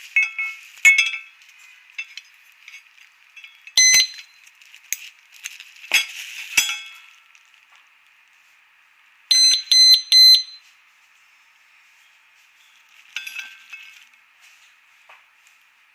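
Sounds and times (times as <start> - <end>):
metallic clinks and rattles: 0.0 - 7.5, 12.6 - 14.2.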